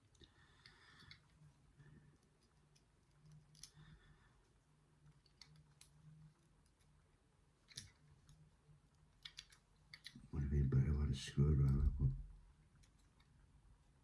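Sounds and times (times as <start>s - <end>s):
metallic clicks and scrapes of lock: 9.2s - 10.2s.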